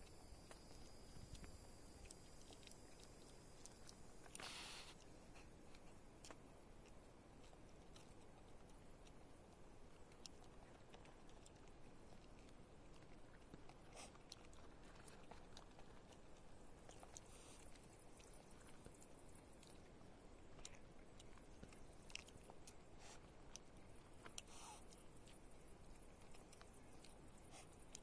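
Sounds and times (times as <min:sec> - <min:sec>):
person chewing and biting food: 0:00.0 - 0:09.2, 0:09.9 - 0:28.0
background hiss: 0:00.0 - 0:09.9, 0:22.6 - 0:28.0.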